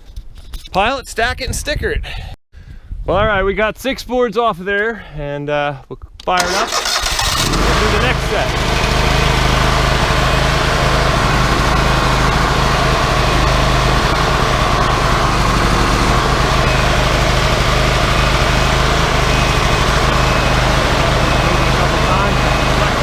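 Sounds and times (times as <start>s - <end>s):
sawmill engine running: 6.4s - 23.0s.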